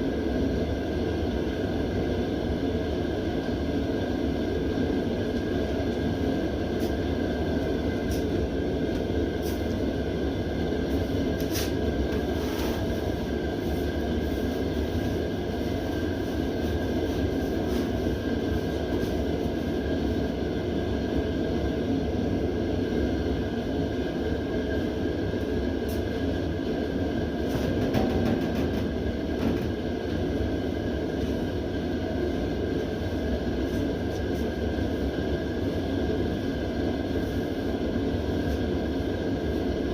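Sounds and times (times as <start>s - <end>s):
heater burner rushing: 0.0s - 39.9s.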